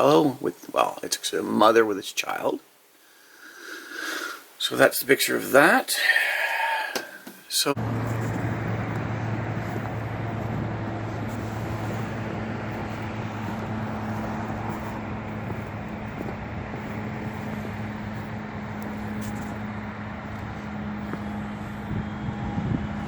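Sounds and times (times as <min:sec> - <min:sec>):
vehicle engine humming: 0:07.7 - 0:23.0.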